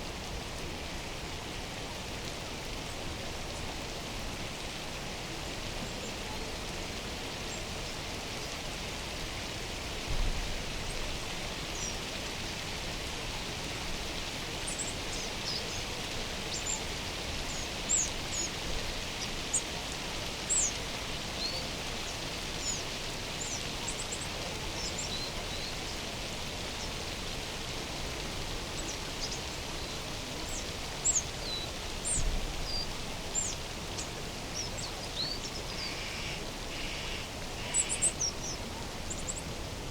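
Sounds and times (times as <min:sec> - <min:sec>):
rushing hiss ambience: 0:00.0 - 0:39.9
small birds chirping: 0:20.5 - 0:20.8, 0:28.8 - 0:39.5.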